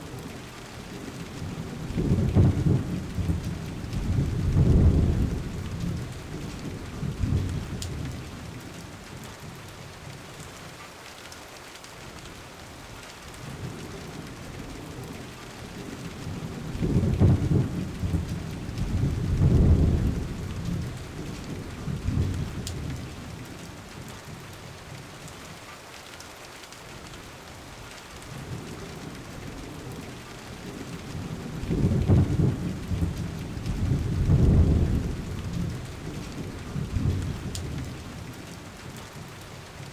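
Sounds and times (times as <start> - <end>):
steady rain: 0.0 - 39.9
low rolls of thunder: 0.1 - 8.8, 13.4 - 24.4, 28.2 - 39.3.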